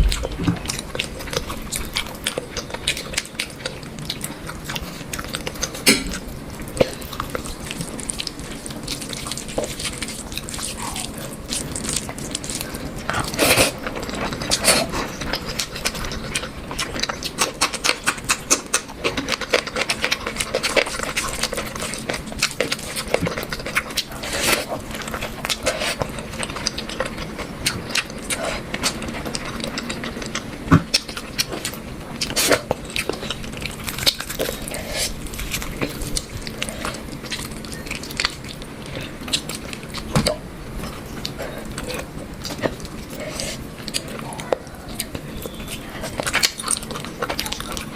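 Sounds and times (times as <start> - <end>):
person chewing and lip-smacking: 0.0 - 47.9.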